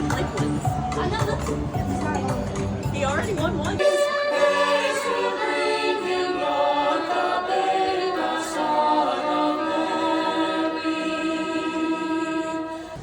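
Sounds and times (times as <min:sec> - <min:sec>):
choir singing: 0:03.8 - 0:13.0.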